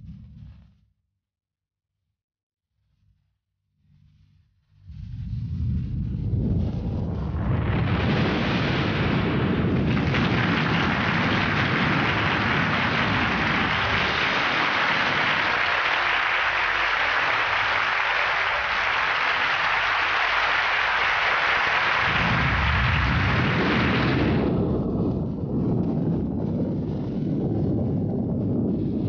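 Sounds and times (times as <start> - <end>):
low rumble: 4.1 - 29.0
audience applauding: 8.1 - 24.8.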